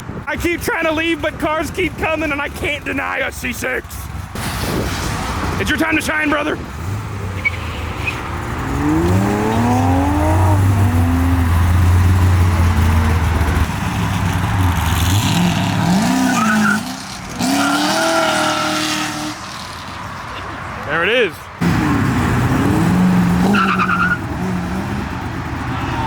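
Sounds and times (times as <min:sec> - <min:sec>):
idling engine hum: 0:00.0 - 0:04.4, 0:05.2 - 0:26.0
car engine accelerating hard: 0:06.6 - 0:19.9, 0:21.6 - 0:26.0.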